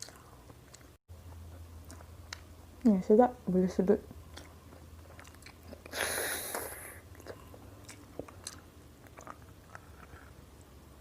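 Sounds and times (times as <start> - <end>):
wet chewing: 0.0 - 2.8, 4.2 - 10.7
person sucking food: 5.2 - 8.6.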